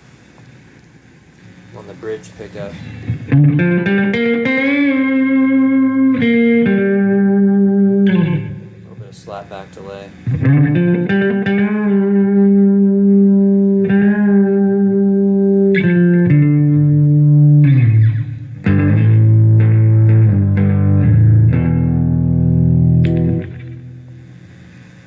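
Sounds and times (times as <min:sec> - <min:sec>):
clean electric guitar: 0:02.7 - 0:09.1, 0:10.1 - 0:25.0.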